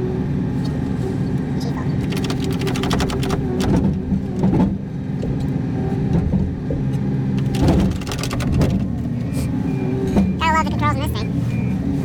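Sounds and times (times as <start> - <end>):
truck engine running: 0.0 - 12.0
rapid clicks: 2.0 - 3.8, 7.4 - 9.0.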